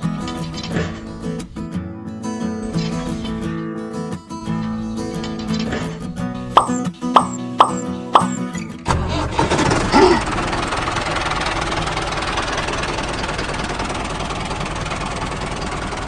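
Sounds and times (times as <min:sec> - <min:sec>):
engine starting and running: 0:08.9 - 0:16.0.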